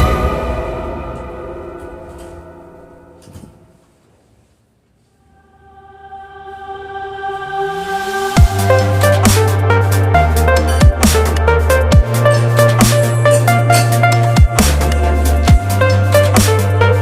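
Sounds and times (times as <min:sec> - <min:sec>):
background music: 0:00.0 - 0:03.9, 0:05.2 - 0:17.0
choir-like chord: 0:05.2 - 0:10.3
electronic dubstep beat: 0:07.9 - 0:17.0.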